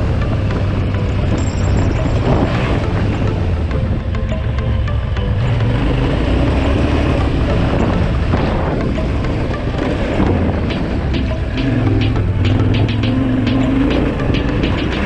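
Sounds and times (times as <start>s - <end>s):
wind buffeting microphone: 0.0s - 4.2s, 6.3s - 12.7s.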